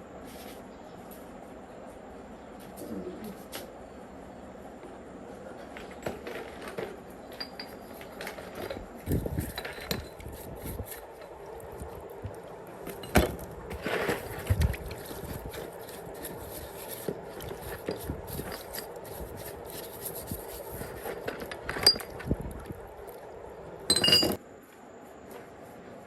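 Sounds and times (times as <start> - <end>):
metal tools clinking and knocking: 7.3 - 11.3, 15.0 - 22.3, 23.9 - 24.4
ringing metal clank: 23.9 - 24.4.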